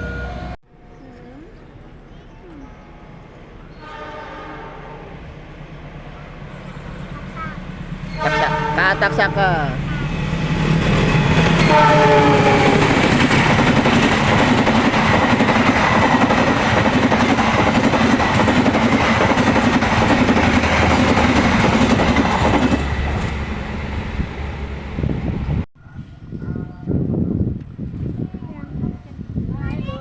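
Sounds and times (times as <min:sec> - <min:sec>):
train carriages rumbling over rails: 0:02.0 - 0:25.6
train horn: 0:03.7 - 0:05.3, 0:08.1 - 0:09.7, 0:11.2 - 0:13.1.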